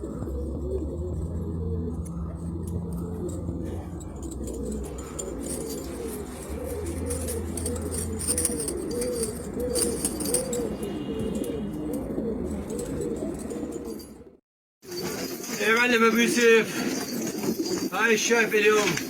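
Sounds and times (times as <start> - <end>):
steady low hum: 0.0 - 13.6
pigeons cooing: 0.0 - 19.0.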